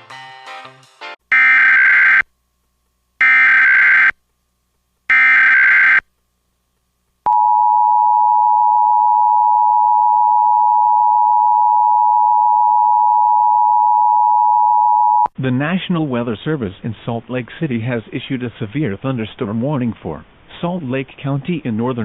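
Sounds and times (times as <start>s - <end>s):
two-tone alarm: 1.3s - 2.2s, 3.2s - 4.1s, 5.1s - 6.0s.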